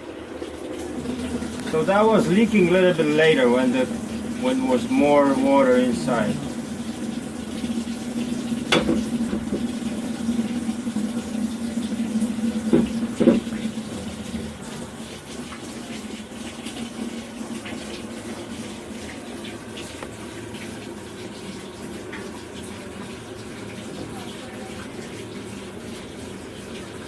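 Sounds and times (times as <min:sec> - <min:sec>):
water running into washing machine: 0:00.0 - 0:27.0
steady hum: 0:00.8 - 0:10.0
short knocks: 0:08.7 - 0:09.8, 0:12.7 - 0:13.5.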